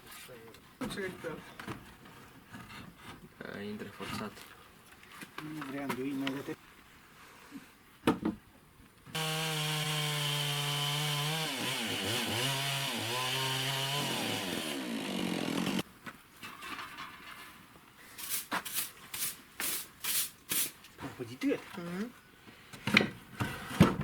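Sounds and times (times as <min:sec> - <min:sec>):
chainsaw running: 0:09.2 - 0:15.8.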